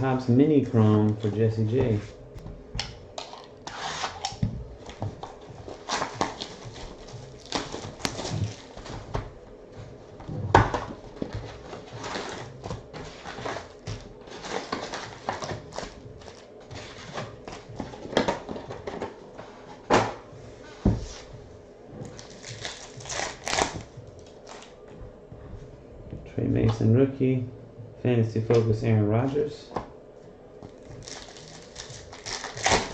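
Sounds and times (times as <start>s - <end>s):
cardboard rustling: 3.7s - 20.0s
foil wrappers crinkling and tearing: 5.6s - 9.0s, 11.6s - 17.7s, 22.1s - 24.7s, 30.8s - 32.9s.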